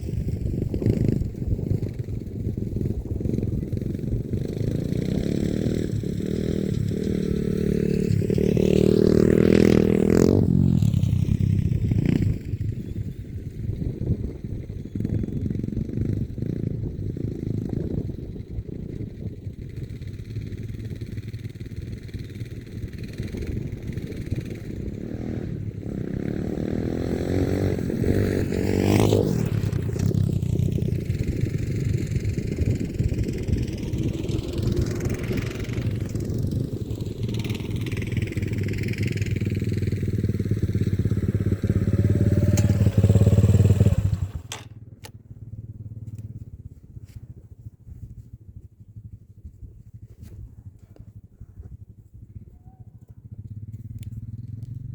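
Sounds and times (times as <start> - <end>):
off-road vehicle engine revving: 3.9 - 10.6, 23.2 - 44.7
faint clicks: 53.4 - 54.8.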